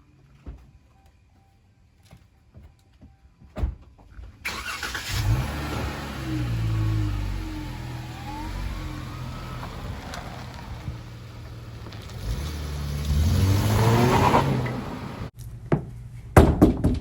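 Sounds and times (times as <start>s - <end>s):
vehicle engine running: 5.1s - 15.3s.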